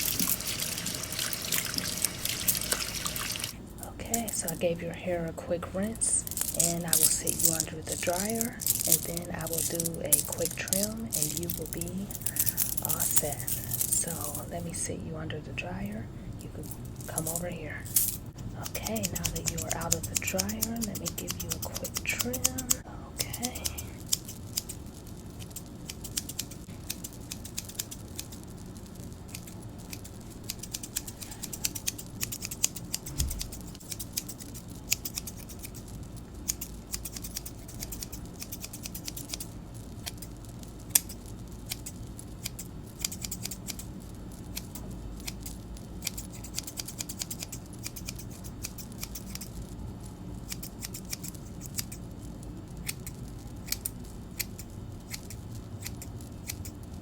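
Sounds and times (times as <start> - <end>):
scissors snipping hair: 6.1 - 14.5, 16.5 - 18.0, 18.6 - 24.8, 25.4 - 28.4, 29.3 - 40.3, 40.9 - 43.9, 44.5 - 49.6, 50.4 - 52.0, 52.8 - 56.8.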